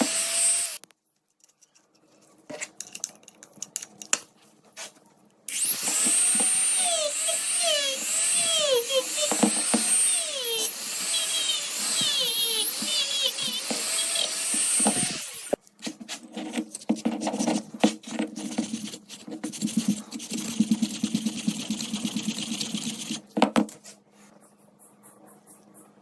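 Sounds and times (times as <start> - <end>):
power tool on metal: 0.0 - 0.8, 5.5 - 15.6.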